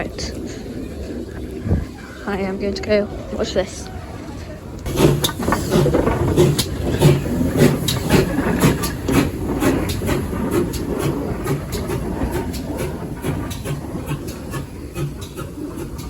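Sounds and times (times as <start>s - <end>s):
train low rumble: 0.0s - 16.0s
steam train wheels clicking and clanking: 4.8s - 16.0s.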